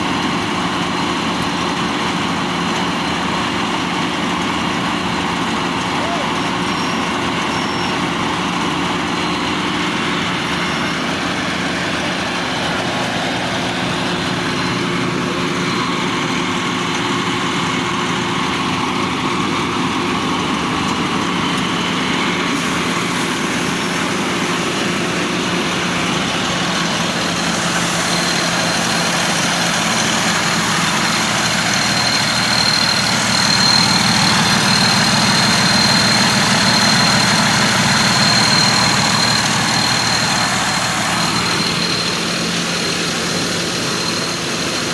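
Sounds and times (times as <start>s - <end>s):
diesel engine running: 0.0s - 44.9s
thin high whine: 22.5s - 44.9s.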